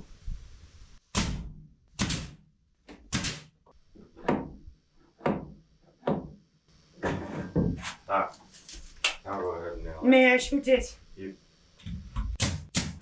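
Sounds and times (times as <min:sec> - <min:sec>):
heavy knocks on wood: 0:05.2 - 0:06.4.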